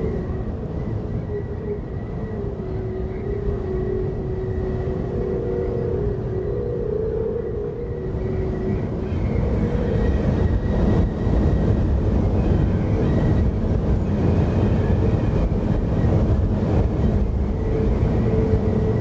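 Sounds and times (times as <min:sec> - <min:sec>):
faint sustained tones: 0:00.0 - 0:10.8
low rumbling drone: 0:00.0 - 0:13.6.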